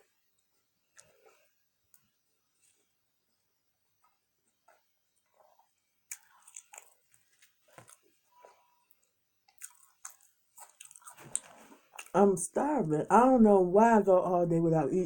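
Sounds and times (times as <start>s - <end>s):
person chewing food: 0.4s - 2.1s, 4.0s - 12.2s
small crunches: 5.2s - 12.2s.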